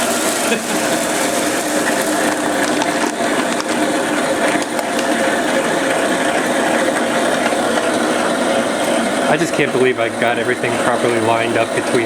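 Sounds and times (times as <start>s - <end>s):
grain mill grinding rattle: 0.0s - 12.0s
motor hum: 0.0s - 12.0s.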